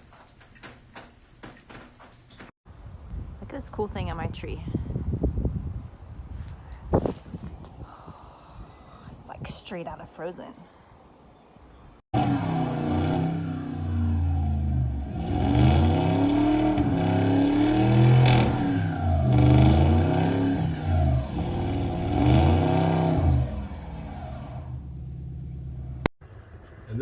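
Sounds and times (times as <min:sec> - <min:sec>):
vehicle engine revving: 0:12.2 - 0:26.1.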